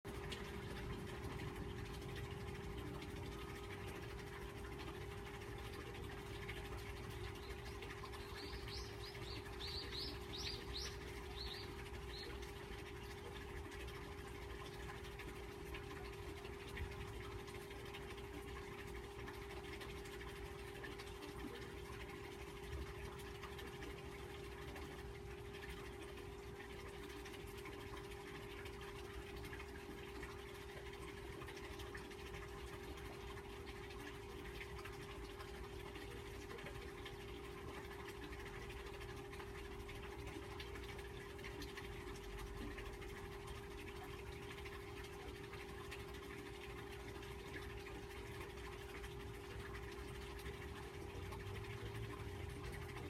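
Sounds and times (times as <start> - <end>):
small bird chirping: 7.4 - 12.4.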